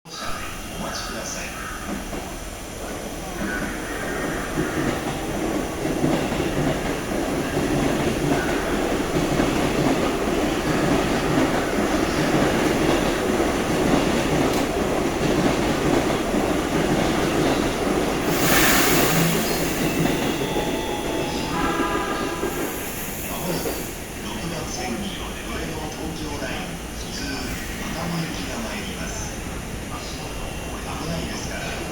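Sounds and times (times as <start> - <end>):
train rumbling on tracks: 0.1 - 31.9
brief hiss: 18.2 - 20.5.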